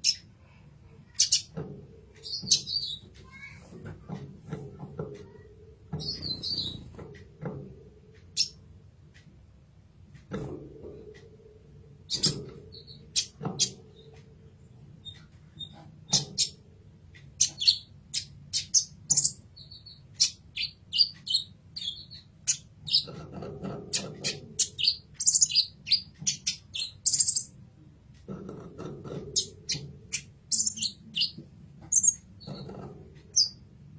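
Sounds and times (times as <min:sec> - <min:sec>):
sunbird chirping and twittering: 0:01.0 - 0:01.5, 0:06.0 - 0:06.9, 0:17.3 - 0:23.1, 0:23.9 - 0:27.5, 0:29.4 - 0:32.7.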